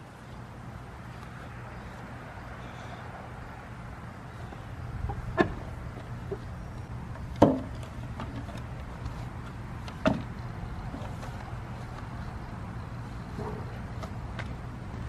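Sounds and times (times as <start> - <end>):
steady low hum: 0.0 - 15.0
tools and parts clunking: 5.1 - 6.5.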